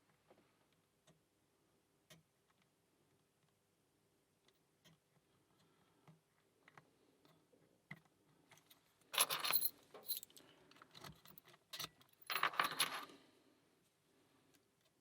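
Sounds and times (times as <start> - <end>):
metallic jangling and rattling: 9.2 - 10.3, 12.2 - 13.1.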